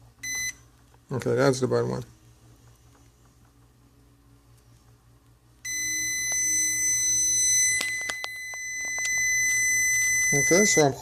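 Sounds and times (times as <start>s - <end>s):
multimeter continuity beep: 0.2s - 0.7s, 5.6s - 11.0s
probe clicks: 7.6s - 9.3s.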